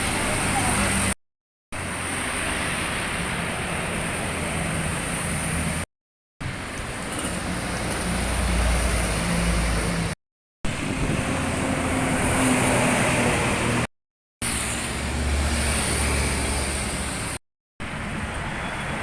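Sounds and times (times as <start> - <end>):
bus engine rumble: 0.0 - 1.2, 6.4 - 19.0
road traffic passing: 0.0 - 19.0.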